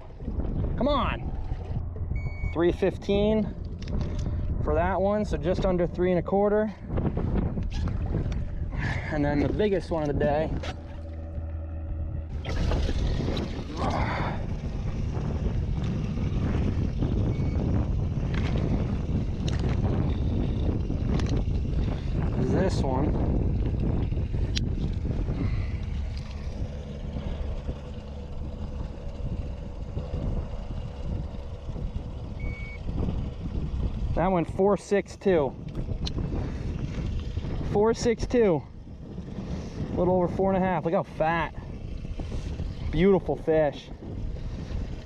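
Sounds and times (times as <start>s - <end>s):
faint steady hum: 0.0s - 34.3s
boat motor running: 0.0s - 45.0s
wind noise: 0.0s - 45.0s.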